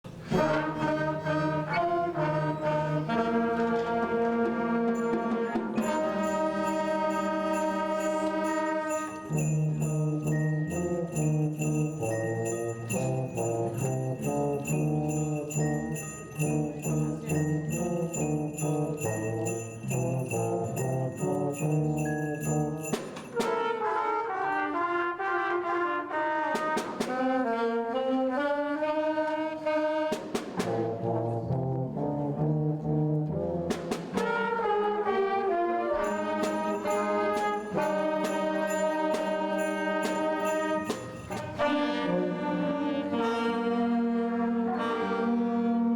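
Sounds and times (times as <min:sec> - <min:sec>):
brass band playing: 0:00.1 - 0:45.9
sleigh bells shaking: 0:04.9 - 0:25.0, 0:36.0 - 0:42.8.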